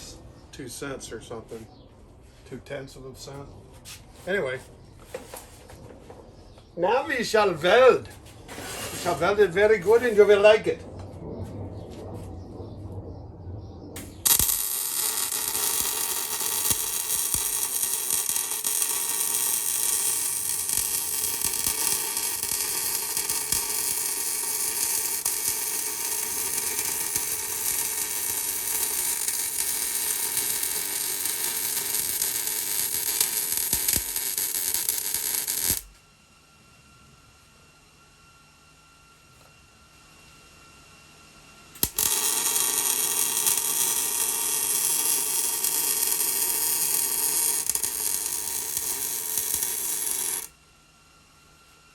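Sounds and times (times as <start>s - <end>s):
welding arc crackling: 14.0s - 35.9s, 41.8s - 50.5s.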